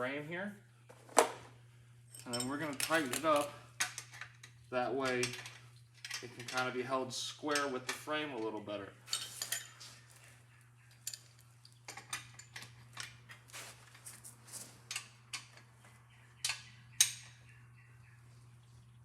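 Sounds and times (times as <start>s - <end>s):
faint low hum: 0.0s - 19.0s
metal hand tools clinking: 2.1s - 3.5s, 9.1s - 9.8s.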